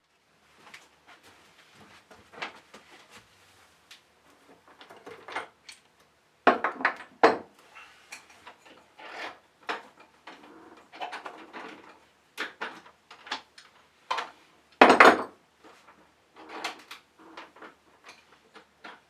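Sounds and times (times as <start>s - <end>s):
hard objects knocking and clattering: 6.5s - 7.5s, 14.8s - 15.4s.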